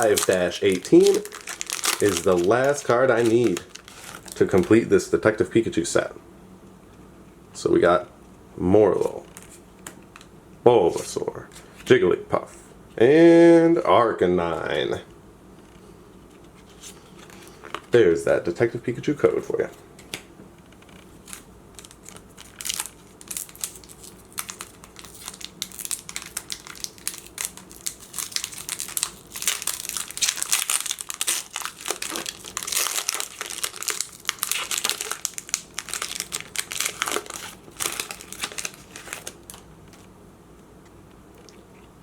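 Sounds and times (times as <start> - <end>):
foil wrapper crinkling: 0.0 - 4.9, 21.2 - 40.0.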